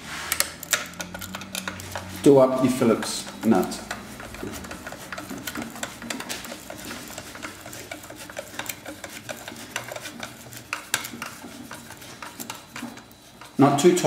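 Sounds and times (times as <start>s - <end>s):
screwdriver clicking and scraping metal: 0.2s - 13.7s.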